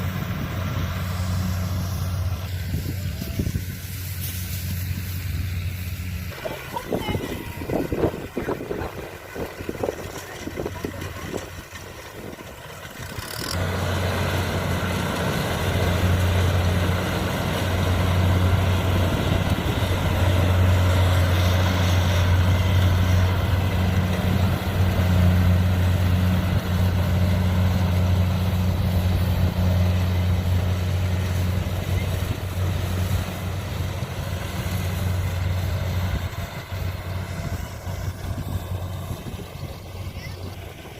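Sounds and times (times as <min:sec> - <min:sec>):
combine harvester engine hum: 0:00.0 - 0:40.9.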